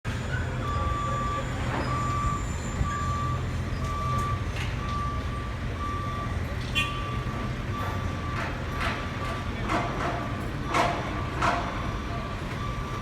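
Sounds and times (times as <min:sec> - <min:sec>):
heavy vehicle engine rumble: 0:00.0 - 0:13.0
reversing alarm beeping: 0:00.1 - 0:13.0.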